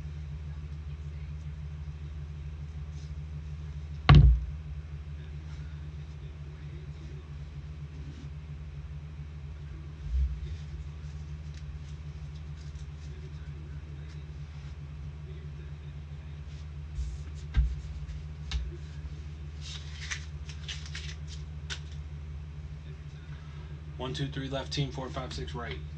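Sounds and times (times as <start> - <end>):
low electrical hum: 0.0 - 25.9
thumps on a table: 4.1 - 4.6.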